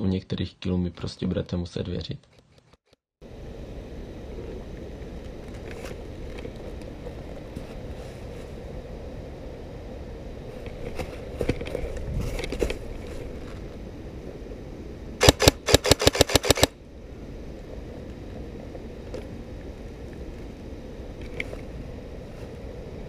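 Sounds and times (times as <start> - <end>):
airsoft gun rapid shots: 15.2 - 16.7.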